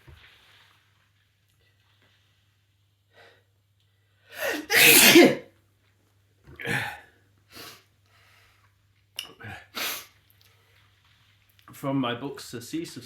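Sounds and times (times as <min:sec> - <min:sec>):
man sneezing loudly: 0:04.4 - 0:05.4.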